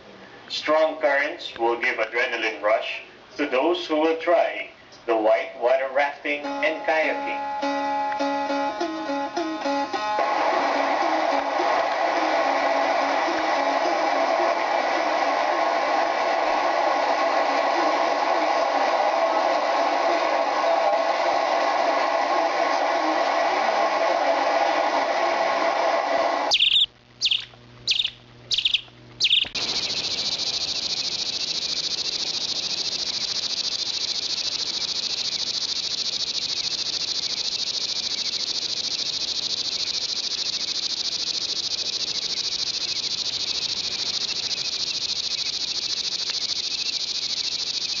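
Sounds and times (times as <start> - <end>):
insect chorus buzzing: 6.4 - 20.3, 26.5 - 48.0
short pulsed calls: 26.5 - 48.0.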